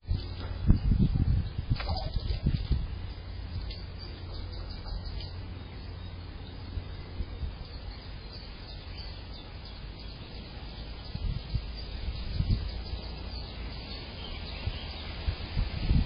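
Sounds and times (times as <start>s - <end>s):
steady low rumble: 0.0s - 16.0s
faint bird chirps: 3.1s - 15.3s.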